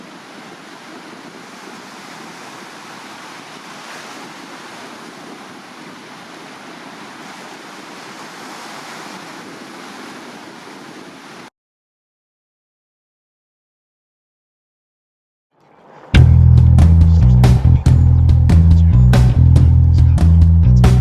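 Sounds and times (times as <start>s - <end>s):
sea surf: 0.0s - 11.5s, 15.6s - 19.6s
strong wind: 0.0s - 11.5s.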